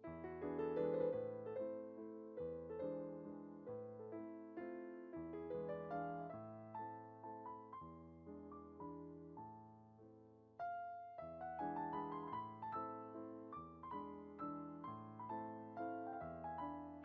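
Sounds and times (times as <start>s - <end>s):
soft piano music: 0.0s - 17.0s.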